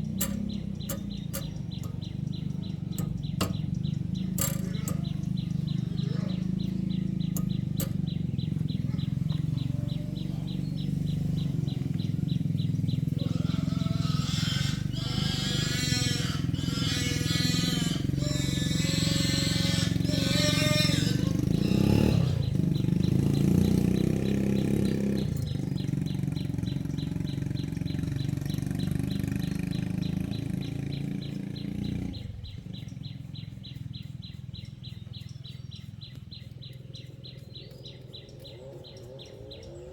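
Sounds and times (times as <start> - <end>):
wavering high calls: 0.0 - 23.0
fast regular ticking: 0.0 - 38.5
engine droning: 0.0 - 39.9.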